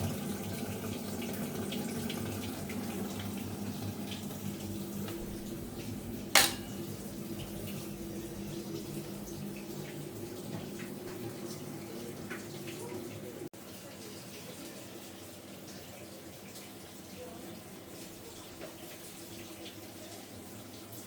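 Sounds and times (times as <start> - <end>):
washing machine motor hum: 0.0 - 13.4
water flowing in washing machine: 0.0 - 21.0.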